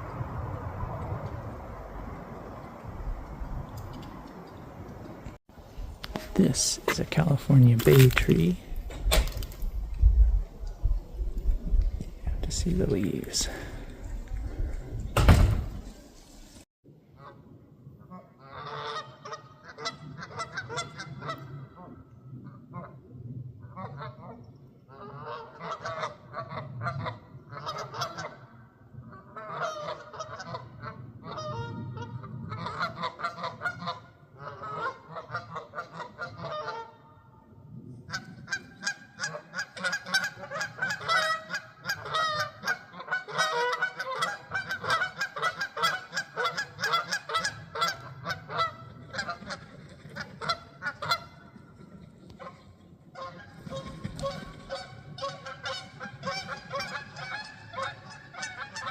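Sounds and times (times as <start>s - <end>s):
geese honking: 18.1s - 21.9s, 24.9s - 28.5s, 29.1s - 37.2s, 38.1s - 58.9s.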